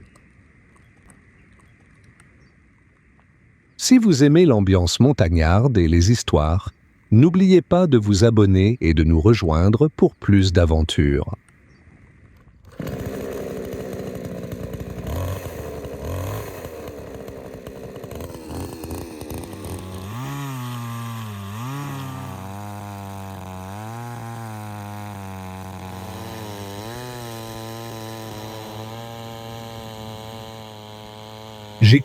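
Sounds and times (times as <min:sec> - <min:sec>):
chainsaw cutting wood: 0:12.6 - 0:32.0.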